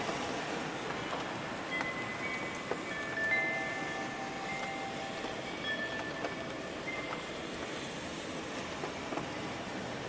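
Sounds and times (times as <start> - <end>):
steady rain: 0.0 - 10.0.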